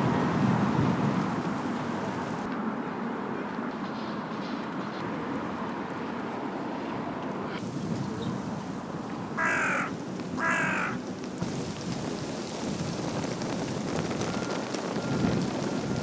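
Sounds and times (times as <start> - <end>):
crow cawing: 9.4 - 11.0.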